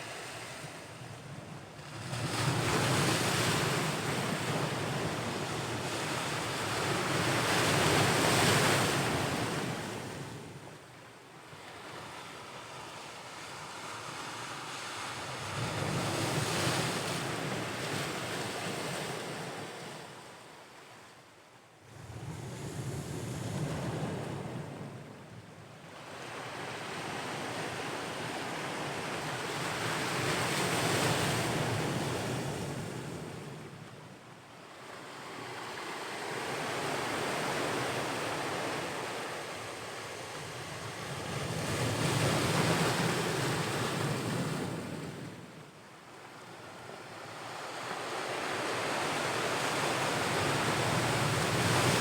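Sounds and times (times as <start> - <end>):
ocean waves on shore: 46.2 - 52.0.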